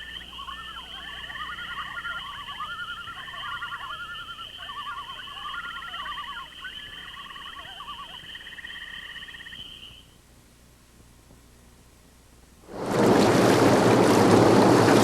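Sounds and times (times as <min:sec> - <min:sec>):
high animal trill: 0:00.0 - 0:08.5
pulsing animal trill: 0:00.0 - 0:10.0
warbling animal calls: 0:00.0 - 0:10.1
faint background hiss: 0:00.0 - 0:12.9.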